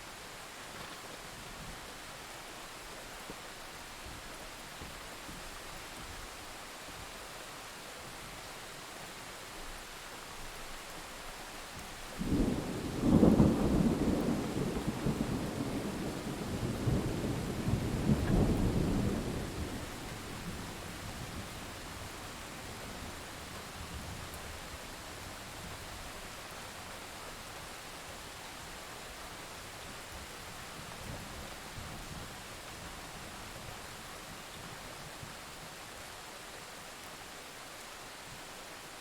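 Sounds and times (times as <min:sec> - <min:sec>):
steady rain falling: 0:00.0 - 0:39.0
thunder rumbling: 0:12.2 - 0:22.2.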